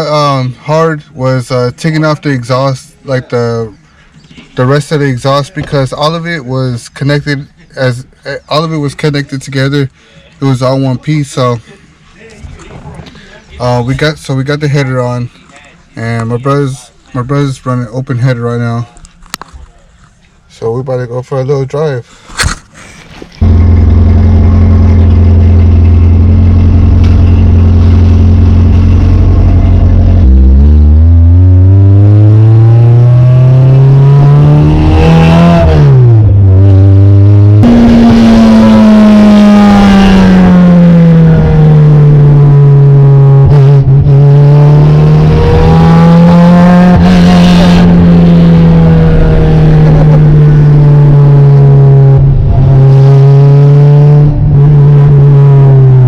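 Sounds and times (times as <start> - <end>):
car engine revving through open headers: 23.4 - 56.0.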